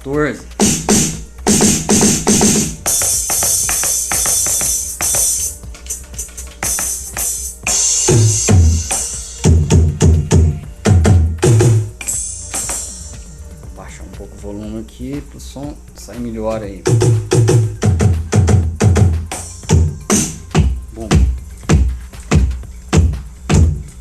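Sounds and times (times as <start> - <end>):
electronic drum strokes: 0.0 - 24.0
ringing cymbals: 2.8 - 9.5, 12.0 - 13.5, 19.3 - 22.9.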